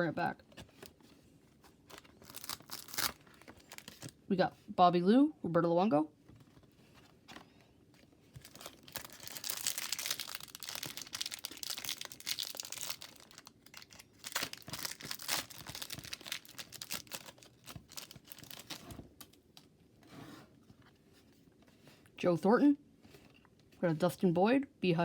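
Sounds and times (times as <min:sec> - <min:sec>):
plastic wrapper crinkling and tearing: 0:01.8 - 0:04.2, 0:08.3 - 0:19.7.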